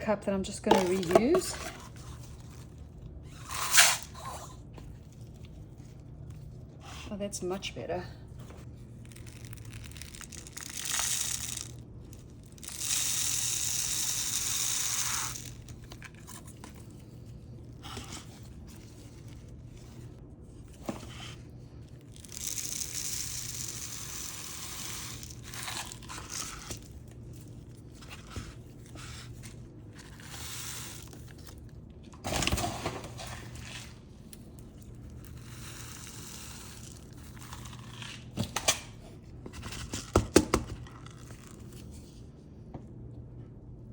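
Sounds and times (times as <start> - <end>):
plastic cup and bag crinkling: 0.6 - 6.8, 8.4 - 32.5, 33.1 - 38.6
granular substrate pouring: 22.1 - 26.4.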